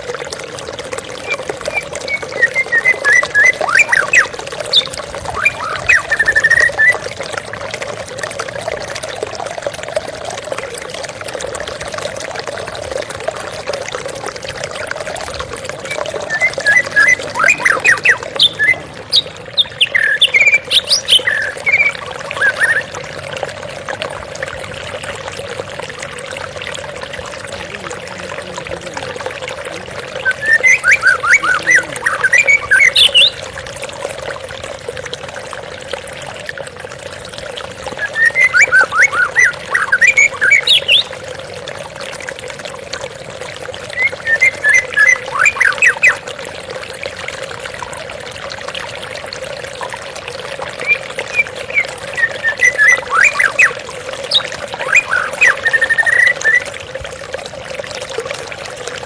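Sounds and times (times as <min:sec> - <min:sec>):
flowing water trickling: 0:00.0 - 0:59.0
songbird rapid chirps: 0:15.8 - 0:23.0, 0:30.1 - 0:33.4, 0:38.0 - 0:41.1, 0:50.8 - 0:56.7.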